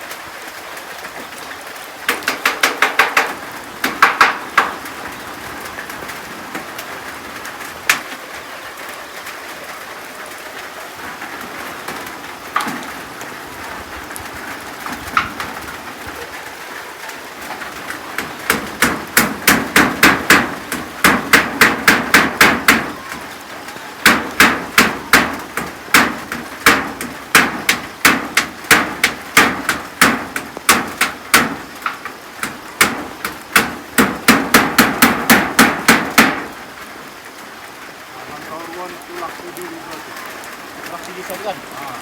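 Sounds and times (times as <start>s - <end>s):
steady rain hiss: 0.0s - 42.0s
hammer driving nails: 2.1s - 4.8s, 18.5s - 22.9s, 24.0s - 36.5s.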